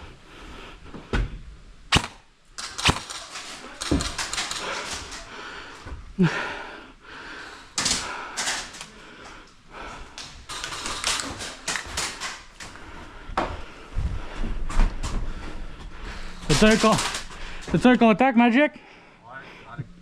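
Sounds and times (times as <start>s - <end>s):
airsoft guns firing: 1.9s - 5.2s, 10.5s - 12.5s.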